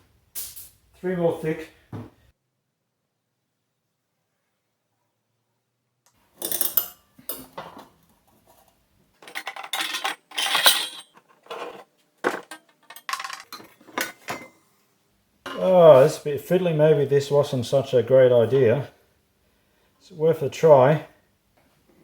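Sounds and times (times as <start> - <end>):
steel bars clanking: 9.2 - 11.8.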